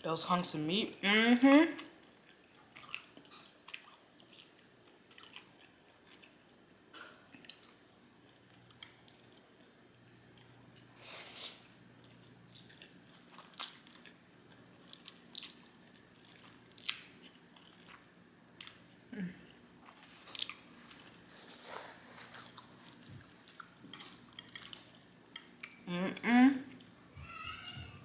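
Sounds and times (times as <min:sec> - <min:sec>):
person chewing with lips smacking: 0:01.8 - 0:06.4, 0:12.0 - 0:14.2, 0:14.8 - 0:25.9.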